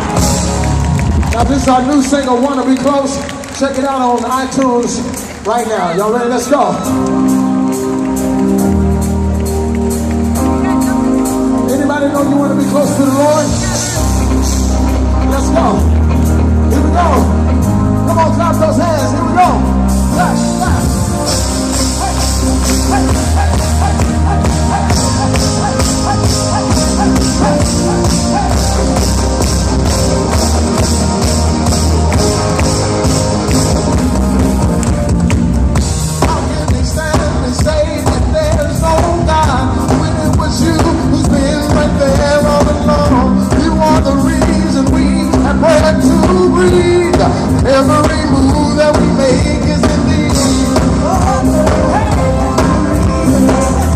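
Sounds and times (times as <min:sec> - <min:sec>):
band accompaniment with drum beat: 0:00.0 - 0:53.9
gospel choir singing: 0:21.8 - 0:29.3.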